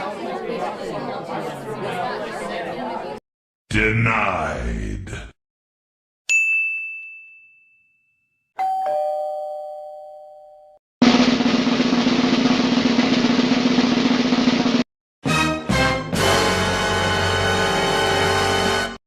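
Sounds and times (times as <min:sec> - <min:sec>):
high ding: 0:06.3 - 0:10.8
snare drum roll: 0:11.0 - 0:14.8.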